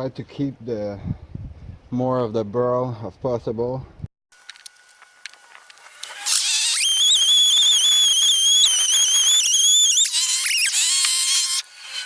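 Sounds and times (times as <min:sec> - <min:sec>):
bandsaw cutting wood whine: 0:05.3 - 0:12.0.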